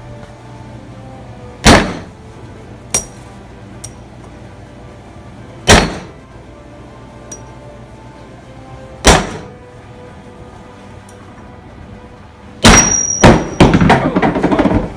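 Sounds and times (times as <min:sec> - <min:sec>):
hammer striking metal bearing: 0:12.6 - 0:14.8.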